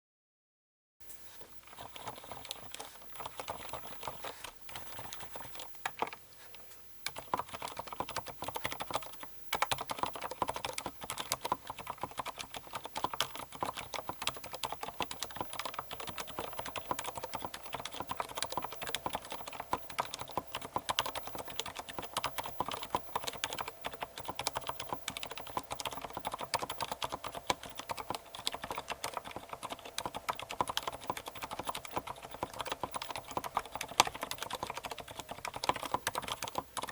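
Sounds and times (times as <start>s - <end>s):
keyboard typing: 1.4s - 36.9s.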